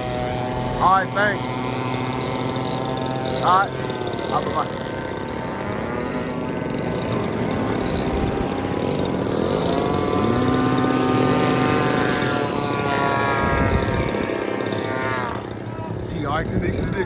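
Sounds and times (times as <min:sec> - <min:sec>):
lower-pitched engine: 0:00.0 - 0:17.0
model airplane engines buzzing: 0:00.0 - 0:17.0.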